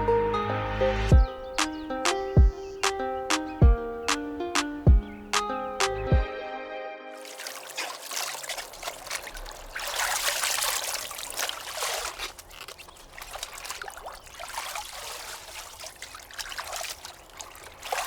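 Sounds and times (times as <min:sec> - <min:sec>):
water trickling and splashing: 0:07.2 - 0:18.0.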